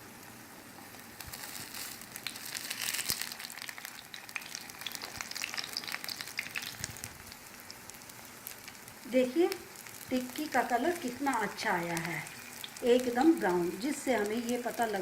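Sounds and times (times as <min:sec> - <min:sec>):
patties sizzling in hot oil: 0:00.0 - 0:15.0.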